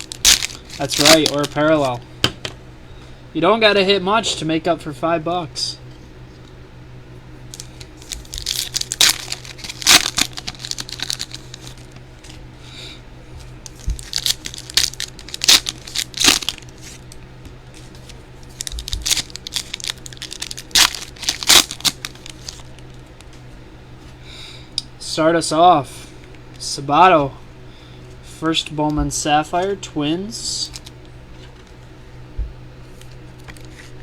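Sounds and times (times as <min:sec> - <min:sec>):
card wrappers tearing and crinkling: 0:00.0 - 0:02.0, 0:07.5 - 0:12.4, 0:13.6 - 0:17.1, 0:17.7 - 0:22.9, 0:30.6 - 0:30.9.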